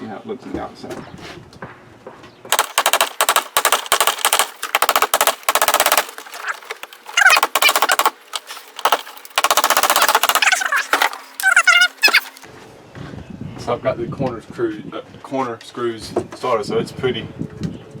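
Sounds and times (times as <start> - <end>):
high squeaks: 6.3 - 9.1, 10.0 - 12.5.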